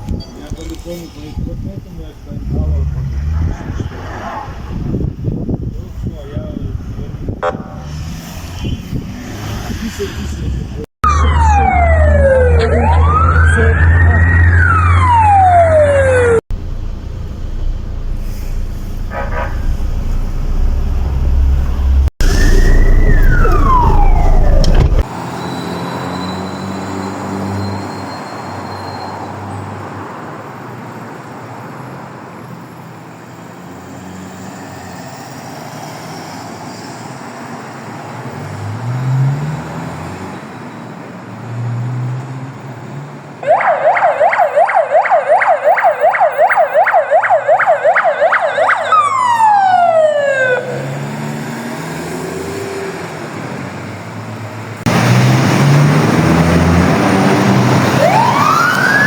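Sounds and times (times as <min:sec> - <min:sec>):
road traffic: 0:00.0 - 0:59.0
ambulance siren: 0:11.0 - 0:16.4, 0:21.8 - 0:28.9, 0:43.4 - 0:51.4, 0:56.8 - 0:59.0.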